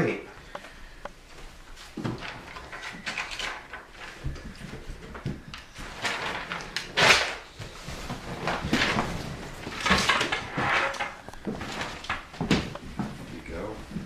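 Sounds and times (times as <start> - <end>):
scuffing and knocking of handled things: 7.4 - 14.0.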